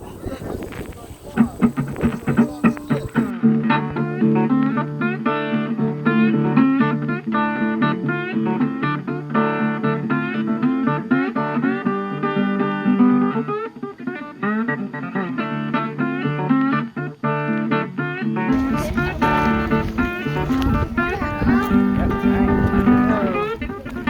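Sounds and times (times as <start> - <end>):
acoustic guitar picking: 0.0 - 24.0
bass notes: 18.5 - 24.0.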